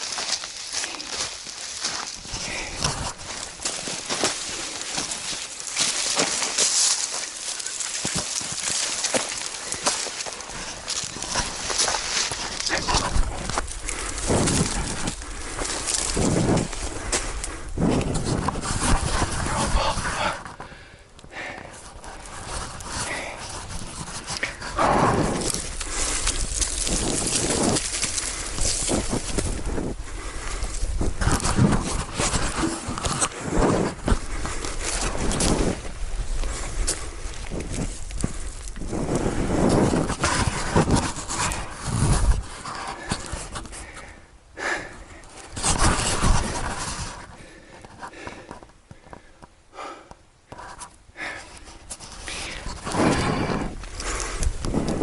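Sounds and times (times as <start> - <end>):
person breathing hard: 0.7 - 5.3, 8.8 - 55.0
man panting: 2.2 - 3.4, 18.8 - 28.7, 42.8 - 46.0, 47.3 - 50.3.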